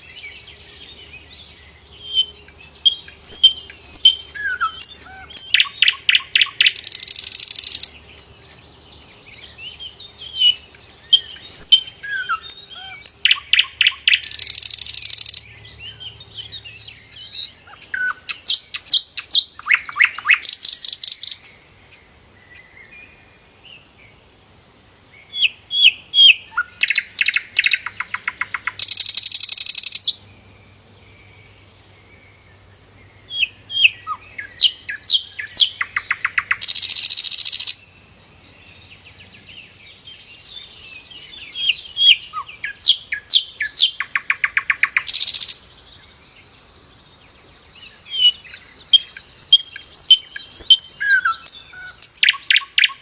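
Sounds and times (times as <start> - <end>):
bird chirps and whistles: 48.2 - 53.0.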